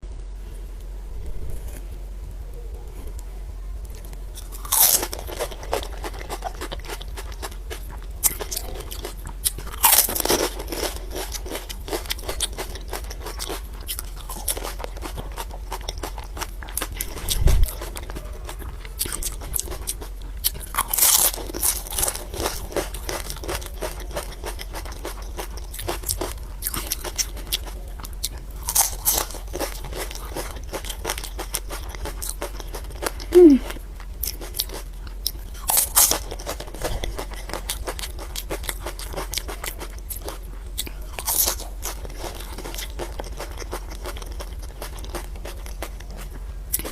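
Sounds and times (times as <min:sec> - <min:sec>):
crackly chewing: 0:00.8 - 0:46.9
crisp shells crunching as bitten: 0:04.4 - 0:46.9.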